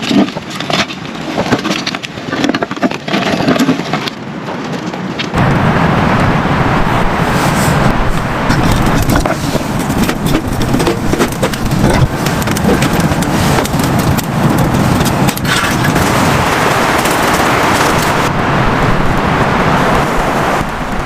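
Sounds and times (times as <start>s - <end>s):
heavy rain falling: 5.3s - 21.0s
raindrops striking a surface: 7.9s - 21.0s.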